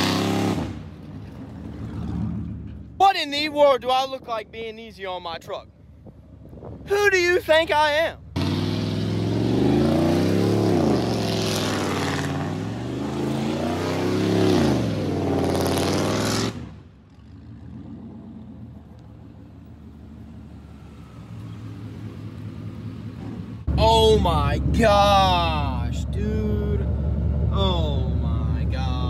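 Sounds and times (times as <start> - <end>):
truck engine revving: 0.0 - 2.8, 8.2 - 18.7.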